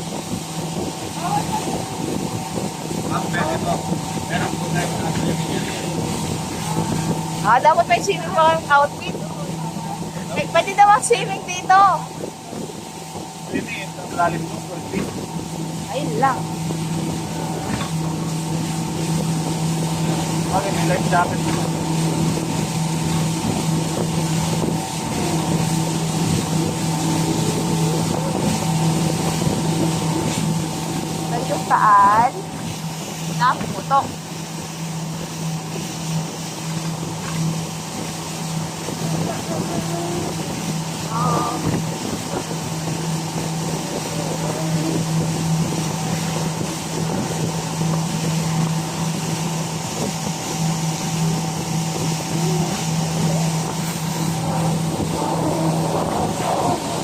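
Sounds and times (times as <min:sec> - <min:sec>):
motorboat engine humming: 0:00.0 - 0:57.0
water rushing past: 0:00.0 - 0:57.0
wind rushing: 0:00.0 - 0:57.0.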